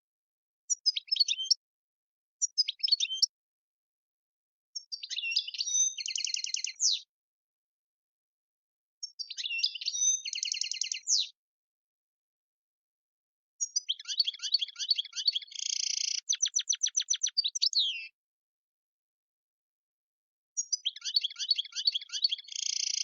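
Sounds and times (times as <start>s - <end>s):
goldfinch singing: 0.7s - 1.6s, 2.4s - 3.3s, 4.9s - 7.0s, 9.0s - 11.3s, 13.6s - 18.1s, 20.6s - 23.0s.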